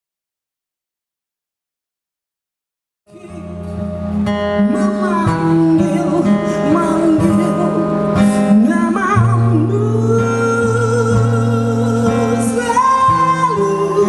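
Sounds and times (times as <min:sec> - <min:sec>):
acoustic guitar: 0:03.1 - 0:14.0
sustained bass: 0:03.1 - 0:14.0.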